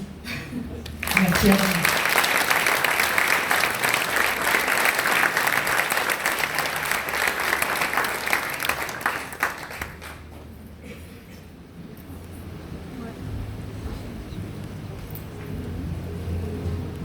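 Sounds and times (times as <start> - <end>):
audience applauding: 0.8 - 10.4.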